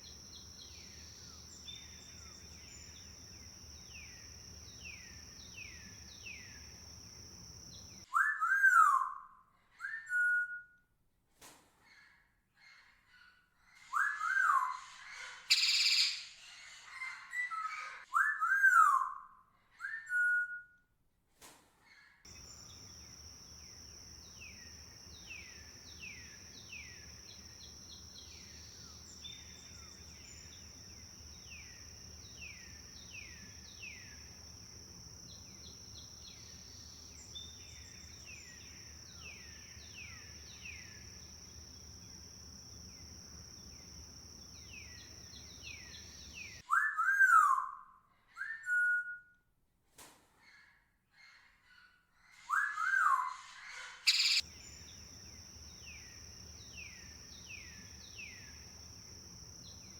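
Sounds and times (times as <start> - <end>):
down-slurred bird whistles: 54.1 - 54.4
birds whistling calls: 54.1 - 54.9.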